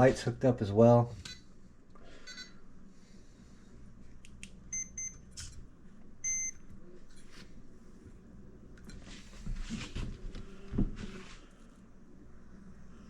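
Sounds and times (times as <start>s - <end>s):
short electronic beeps: 6.2s - 6.6s.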